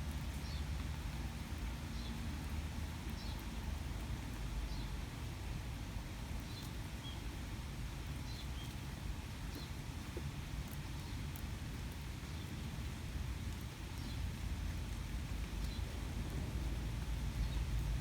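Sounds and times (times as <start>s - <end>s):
low rain rumble: 0.0s - 18.0s.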